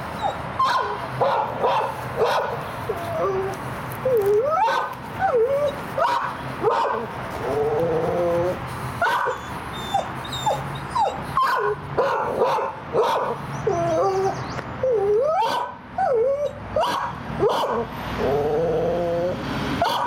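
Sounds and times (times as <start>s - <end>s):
dogs barking through loudspeaker: 0.3s - 3.6s, 4.5s - 5.0s, 6.0s - 7.2s, 8.5s - 10.5s, 11.1s - 14.5s, 15.3s - 15.8s, 16.8s - 18.0s, 19.8s - 20.0s.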